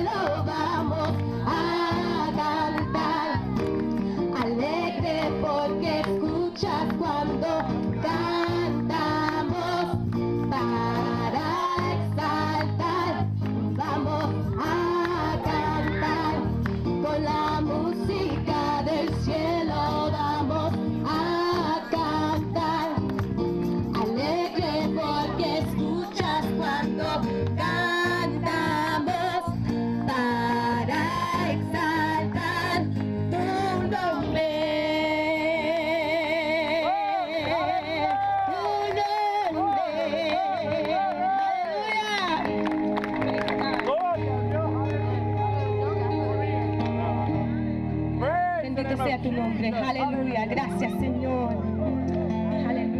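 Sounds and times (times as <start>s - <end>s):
people singing together: 0.0s - 3.8s, 4.4s - 23.1s, 24.0s - 41.1s
person singing: 24.0s - 41.8s.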